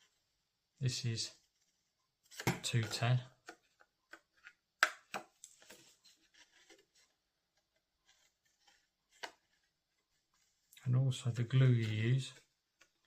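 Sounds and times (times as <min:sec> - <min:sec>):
paper rustling: 0:05.4 - 0:10.7.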